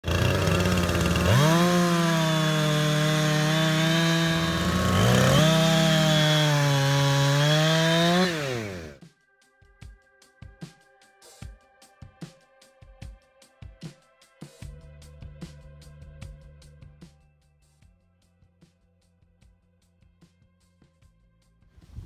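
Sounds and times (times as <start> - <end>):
chainsaw revving: 0.0 - 9.0.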